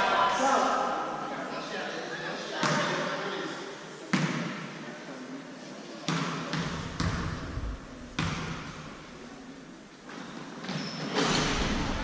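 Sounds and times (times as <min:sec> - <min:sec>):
crowd voices: 0:00.0 - 0:12.0
basketball bouncing on gym floor: 0:06.1 - 0:08.9.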